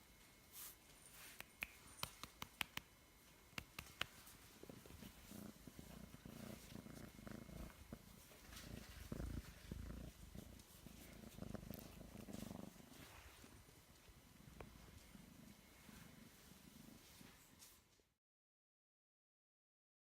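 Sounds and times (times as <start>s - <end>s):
kitten purring: 3.5s - 17.6s.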